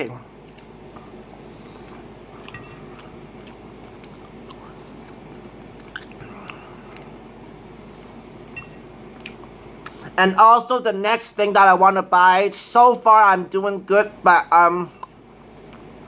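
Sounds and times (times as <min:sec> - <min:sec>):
low background hum: 0:00.0 - 0:16.0
close-up chewing: 0:00.4 - 0:08.2, 0:09.1 - 0:10.1
wet mouth clicks: 0:02.4 - 0:07.1.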